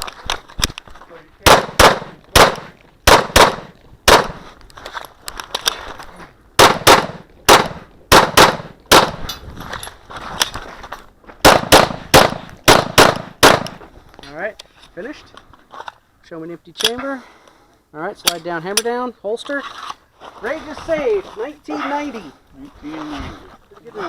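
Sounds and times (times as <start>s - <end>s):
pistol shots: 1.4s - 4.4s, 6.6s - 9.2s, 11.4s - 13.8s.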